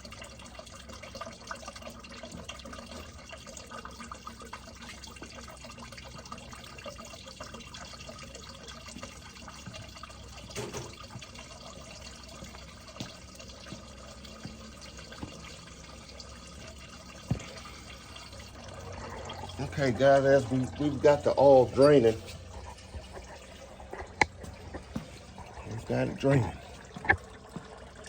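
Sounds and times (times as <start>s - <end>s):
oil trickling from drain hole: 0.0s - 28.0s.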